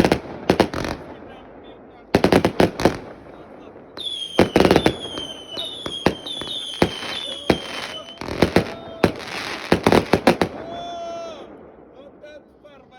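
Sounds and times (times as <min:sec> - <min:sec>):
rapid firework crackling: 0:00.0 - 0:01.6, 0:02.2 - 0:11.6
firework bangs: 0:00.0 - 0:12.3
firework whistling tails: 0:04.0 - 0:10.7.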